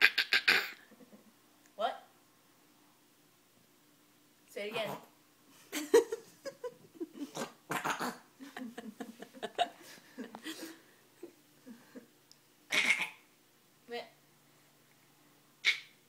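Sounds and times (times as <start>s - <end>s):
baby making vocal bursts: 0.0s - 0.8s.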